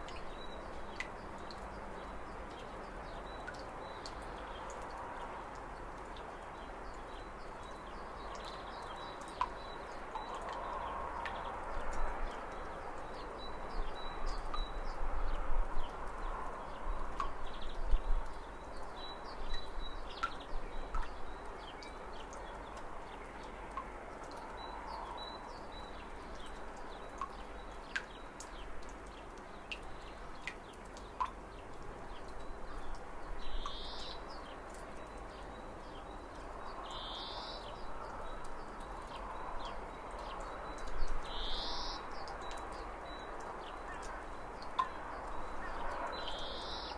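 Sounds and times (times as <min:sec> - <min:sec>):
small birds chirping: 0:29.4 - 0:46.9.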